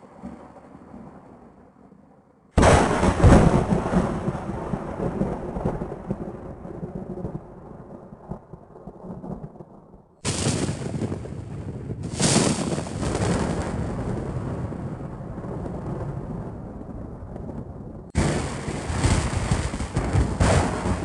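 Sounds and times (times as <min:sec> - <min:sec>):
loud thunderclap: 0:02.6 - 0:21.0
thunder rumbling: 0:02.6 - 0:21.0.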